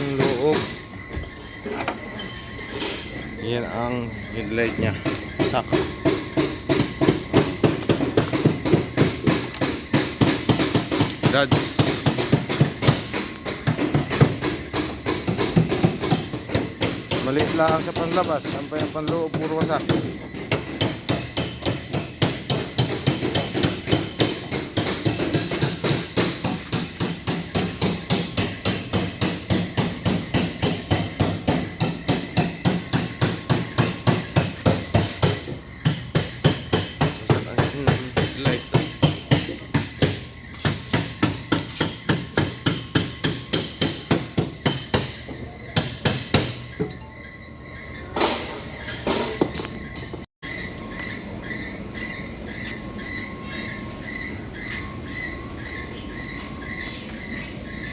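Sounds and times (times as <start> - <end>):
hammer on sheet metal: 5.0 - 46.7.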